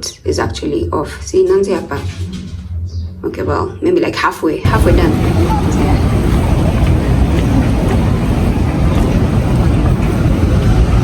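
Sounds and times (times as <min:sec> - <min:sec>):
vehicle road rumble: 0:04.6 - 0:11.0.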